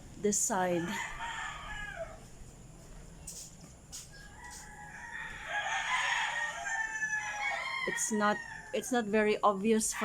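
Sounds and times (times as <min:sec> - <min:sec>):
rooster crowing: 0:00.6 - 0:02.3, 0:04.1 - 0:09.1.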